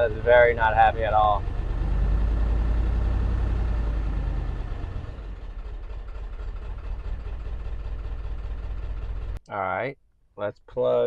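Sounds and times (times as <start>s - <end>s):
diesel engine idling rough: 0.0s - 9.4s.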